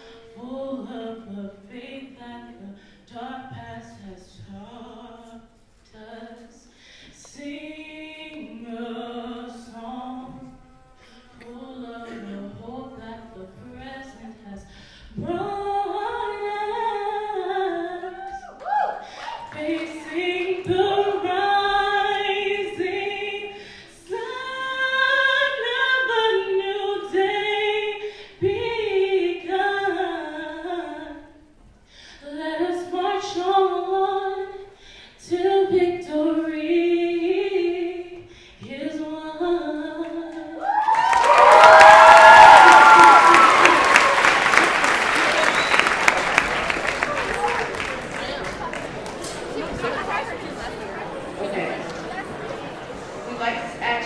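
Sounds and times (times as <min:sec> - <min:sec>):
audience applause: 0:40.6 - 0:53.7.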